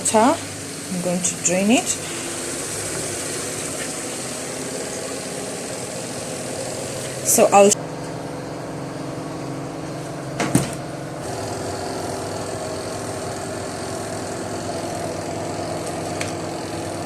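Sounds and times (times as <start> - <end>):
washing machine motor hum: 0.0 - 17.0.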